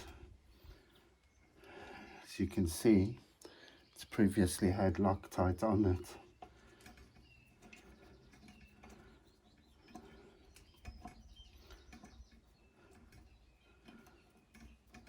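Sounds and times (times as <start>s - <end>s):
faint bird chirps: 5.9s - 15.0s.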